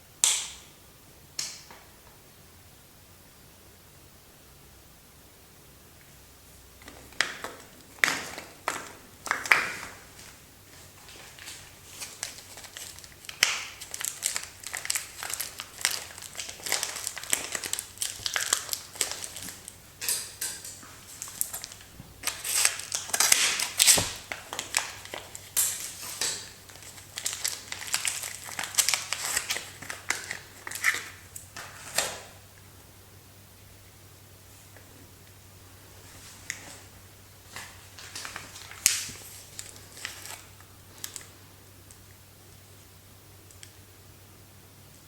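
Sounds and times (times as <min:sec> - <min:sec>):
wrappers crinkling: 0:06.9 - 0:32.3, 0:36.2 - 0:41.4.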